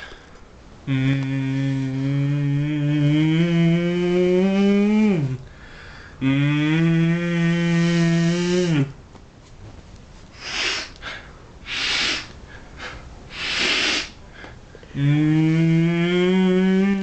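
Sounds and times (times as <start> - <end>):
man humming: 0.8 - 5.5, 6.2 - 9.0, 14.9 - 17.0
breathy gasps: 5.4 - 6.2.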